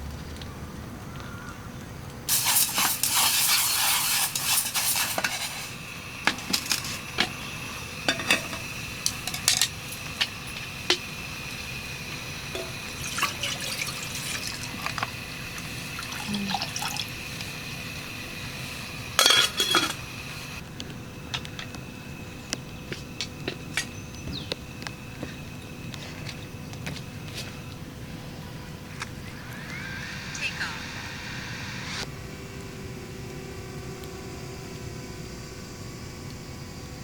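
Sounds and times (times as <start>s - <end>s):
steady hiss: 2.3s - 20.6s, 24.6s - 32.4s
water pouring: 12.6s - 17.2s
cookware and utensils clinking: 19.2s - 20.1s.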